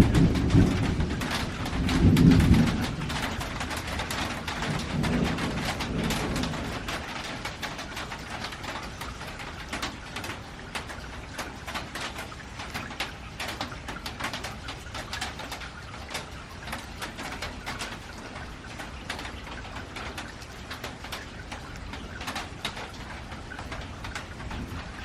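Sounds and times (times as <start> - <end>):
drips tapping metal: 0.0 - 25.0
rain on a metal roof: 0.0 - 25.0.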